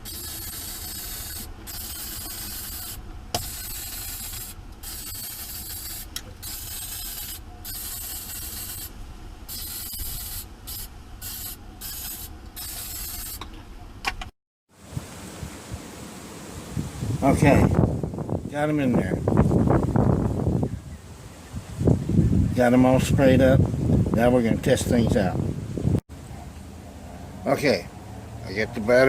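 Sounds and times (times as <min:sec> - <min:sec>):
aerosol can spraying: 0:00.0 - 0:13.4.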